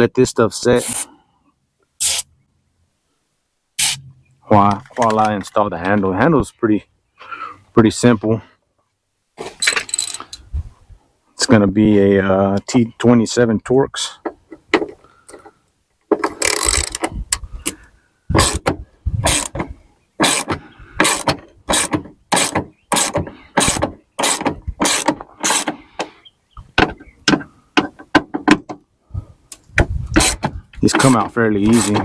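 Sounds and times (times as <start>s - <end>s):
hand ratchet clicking: 16.3s - 17.0s, 19.3s - 19.6s.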